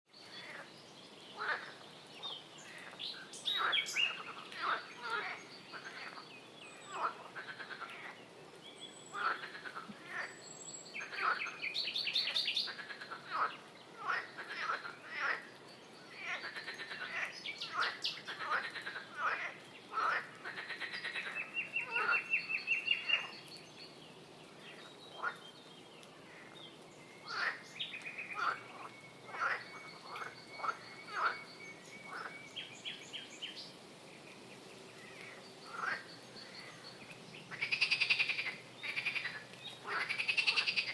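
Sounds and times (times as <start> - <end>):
frogs croaking: 1.4 - 6.2, 6.8 - 8.2, 9.1 - 10.3, 11.0 - 23.4, 24.7 - 25.5, 27.2 - 32.7, 35.0 - 40.9.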